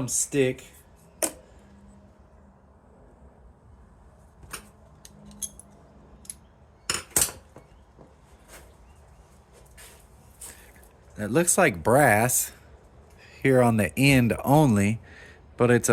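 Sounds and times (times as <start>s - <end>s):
small metal parts clinking: 5.2s - 7.0s.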